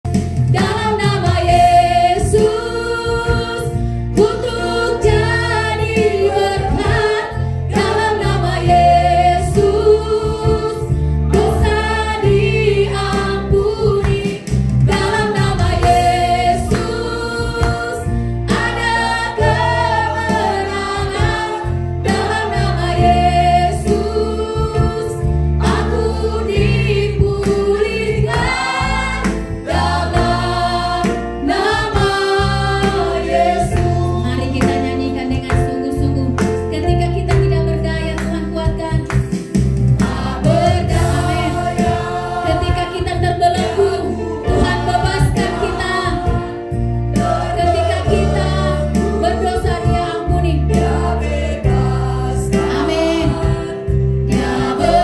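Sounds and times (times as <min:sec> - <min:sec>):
band with deep bass: 0:00.0 - 0:55.0
group of voices singing: 0:00.5 - 0:35.2, 0:39.9 - 0:55.0.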